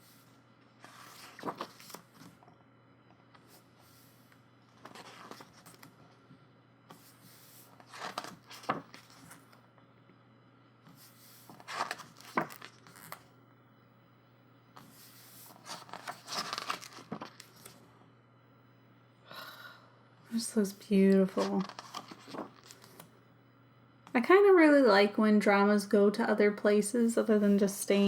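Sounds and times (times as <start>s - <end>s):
book pages turning: 0.1s - 2.4s, 4.7s - 6.0s, 6.9s - 9.6s, 10.9s - 13.2s, 14.8s - 17.9s, 21.1s - 23.1s.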